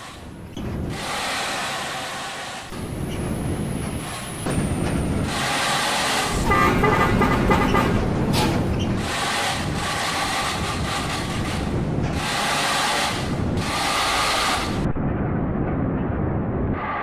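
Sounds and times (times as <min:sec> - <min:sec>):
bus driving past: 0:00.0 - 0:14.9
multi-tone bus horn: 0:06.3 - 0:08.0.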